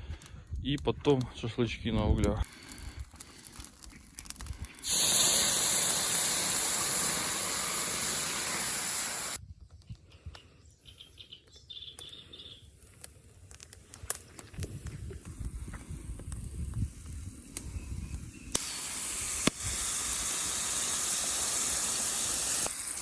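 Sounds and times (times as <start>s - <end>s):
faint crackles and clicks: 0.0s - 4.9s, 11.4s - 18.7s
frying pan sizzling: 4.8s - 9.4s, 18.5s - 23.0s.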